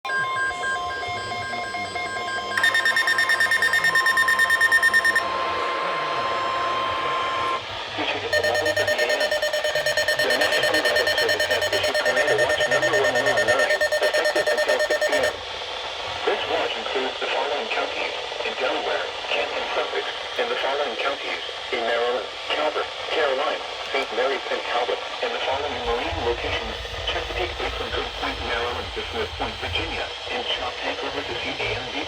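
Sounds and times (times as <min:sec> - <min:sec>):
electronic alarms beeping rapidly: 0:00.1 - 0:05.4, 0:08.3 - 0:15.4
weather radio alert tone: 0:00.1 - 0:07.6, 0:08.2 - 0:15.4.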